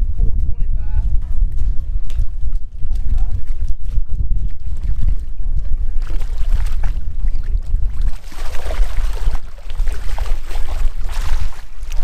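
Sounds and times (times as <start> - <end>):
wind rumbling on microphone: 0.0 - 12.0
water splashing and sloshing: 1.5 - 12.0.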